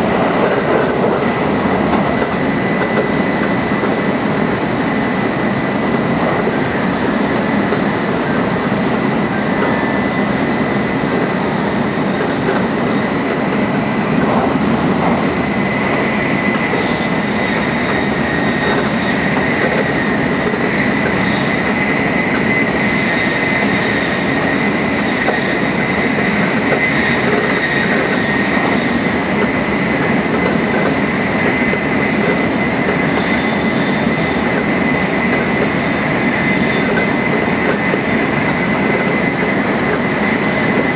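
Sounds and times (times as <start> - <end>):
high-speed train running: 0.0 - 40.9
thin high whine: 3.7 - 9.0, 38.6 - 40.9.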